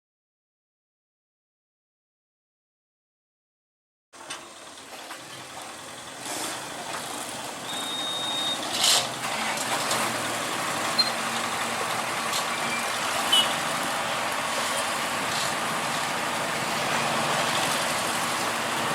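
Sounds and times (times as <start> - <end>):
heavy truck engines: 4.2 - 18.9
road traffic noise: 4.2 - 18.9
short high-pitched beeps: 7.7 - 8.6.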